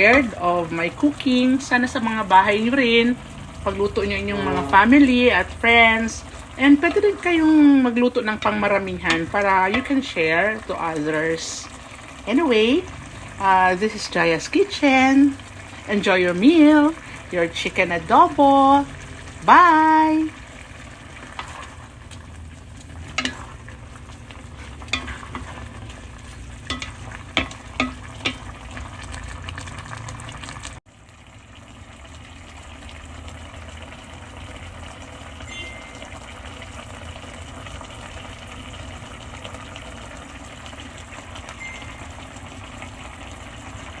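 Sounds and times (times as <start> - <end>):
food sizzling in a pan: 0.0 - 44.0
utensil clinking against pan: 23.1 - 23.6, 24.5 - 25.8, 26.6 - 28.5.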